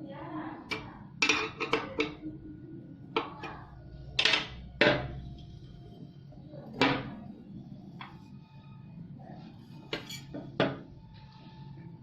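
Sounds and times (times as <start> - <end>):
metal tools clinking and knocking: 9.9 - 10.5.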